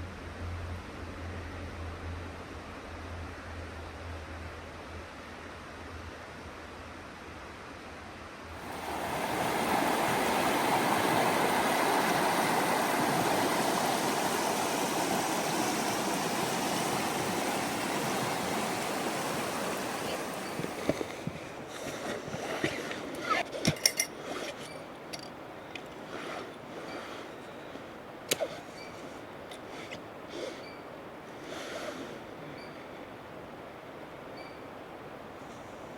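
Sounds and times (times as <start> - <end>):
steady rushing outdoor noise: 8.5 - 32.4.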